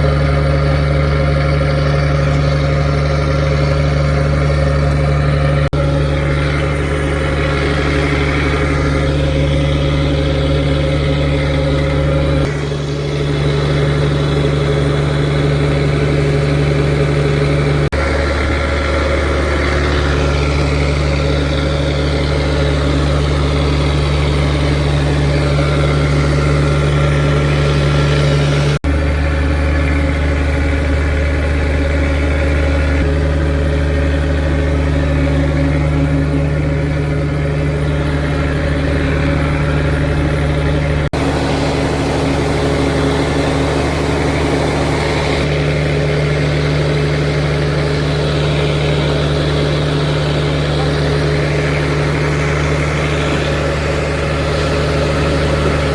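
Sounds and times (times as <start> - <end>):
boat engine humming: 0.0 - 55.9.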